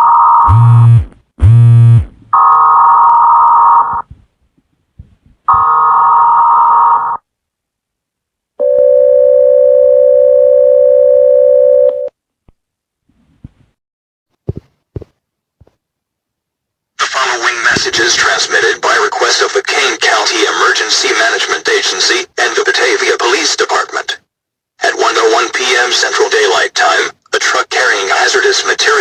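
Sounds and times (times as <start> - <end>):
short low buzzes: 0.5 - 2.3
steady attention tone: 0.5 - 2.6.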